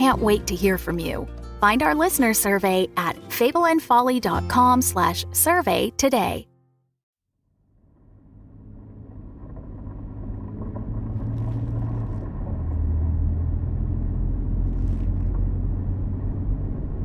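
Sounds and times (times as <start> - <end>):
car engine: 7.8 - 17.0
road rumble: 7.9 - 17.0.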